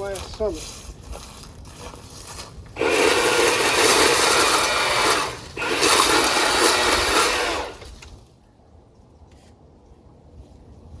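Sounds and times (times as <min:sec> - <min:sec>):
pole saw cutting wood: 0:02.8 - 0:08.1.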